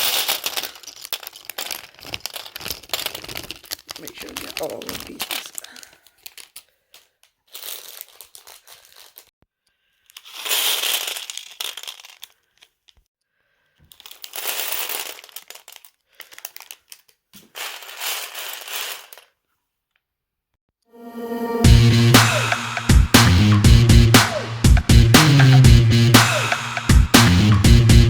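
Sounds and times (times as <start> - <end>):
plastic bags crinkling: 0.0 - 9.3, 10.1 - 13.0, 13.8 - 19.4.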